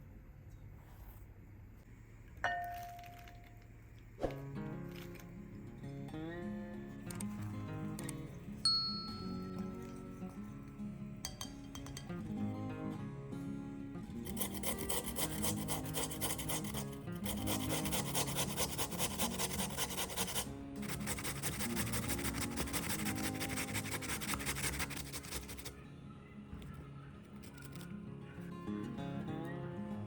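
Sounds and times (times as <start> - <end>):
background music: 4.2 - 30.0
food rasping on a hand grater: 14.3 - 25.7.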